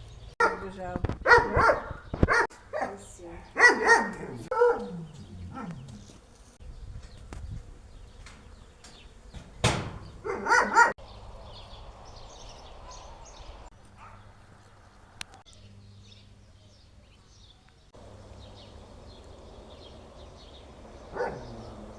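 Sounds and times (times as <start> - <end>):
dog barking and yelping: 0.4 - 0.6, 1.2 - 6.1, 10.2 - 11.0, 21.1 - 21.9.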